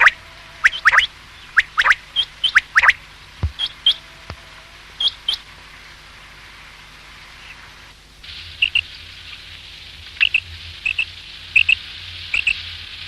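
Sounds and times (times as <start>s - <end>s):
quail calling: 0.0s - 5.4s
low thuds: 3.4s - 4.4s.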